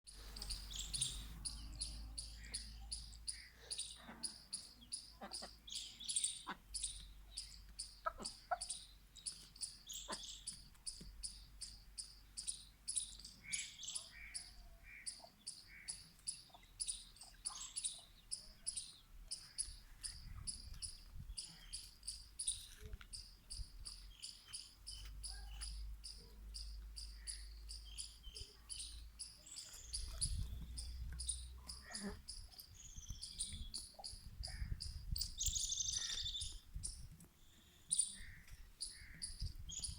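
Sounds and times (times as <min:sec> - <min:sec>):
chick peeps: 0:00.2 - 0:11.1.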